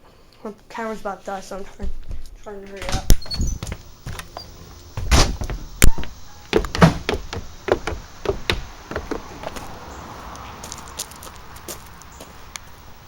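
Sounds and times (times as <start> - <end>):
door knocks and thuds: 2.8 - 9.7.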